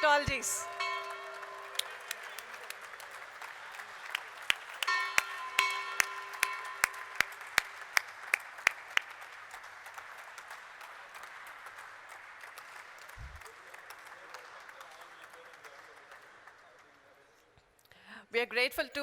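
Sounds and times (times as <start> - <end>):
ringing tone: 0.0 - 2.4
crowd applauding: 0.0 - 17.5.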